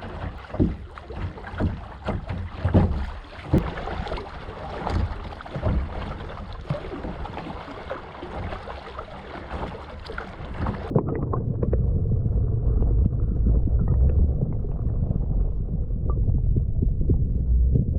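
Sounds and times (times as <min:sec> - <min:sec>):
muffled buffeting rumble: 0:00.0 - 0:07.6, 0:10.0 - 0:17.9
wind and water noise: 0:00.0 - 0:17.9
scattered knocks: 0:00.3 - 0:03.7.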